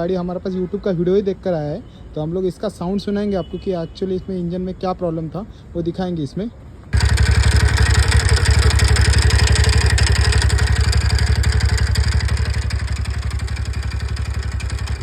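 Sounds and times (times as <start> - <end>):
loud mechanical knocking noise: 7.0 - 15.0
scooter engine idling: 7.0 - 15.0.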